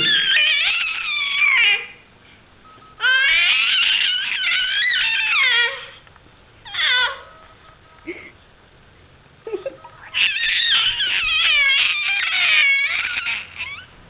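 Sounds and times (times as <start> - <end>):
baby squealing: 0.0 - 2.0, 3.0 - 6.0, 6.6 - 7.3, 10.0 - 13.9.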